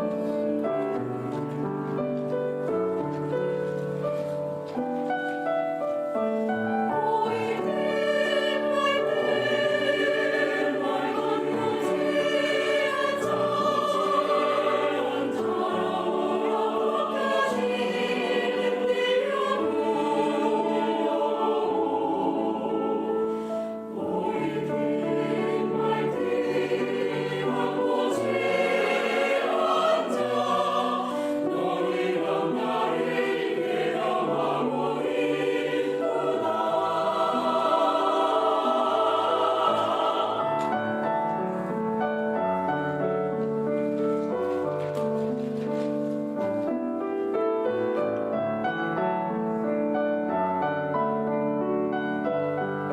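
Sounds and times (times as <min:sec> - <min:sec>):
mixed choir singing: 0:06.5 - 0:42.2.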